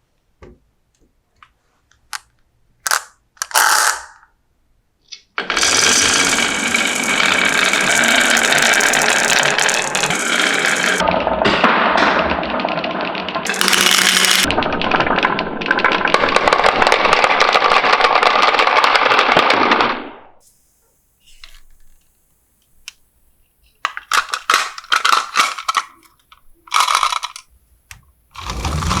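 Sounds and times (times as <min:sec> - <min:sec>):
marbles clattering down a track: 0:02.9 - 0:04.2, 0:05.5 - 0:19.7, 0:26.7 - 0:27.4
marbles clicking on track: 0:02.9 - 0:04.2, 0:05.5 - 0:11.1, 0:12.6 - 0:18.8.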